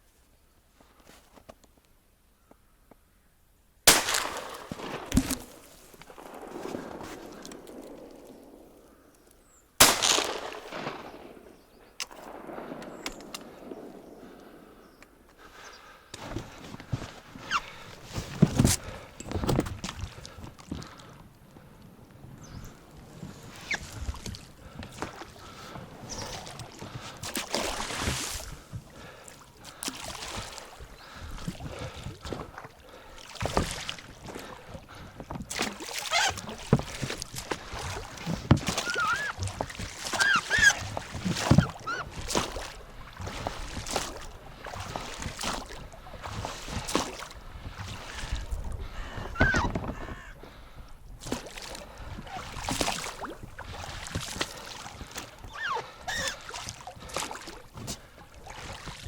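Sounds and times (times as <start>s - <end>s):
ducks quacking: 48.8s - 50.8s.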